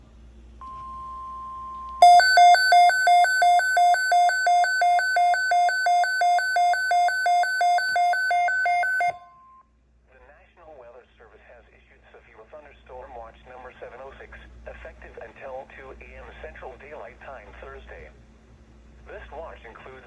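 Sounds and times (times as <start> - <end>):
steady warning tone: 0.6 - 9.6
rapid electronic alarm beeps: 2.0 - 9.6.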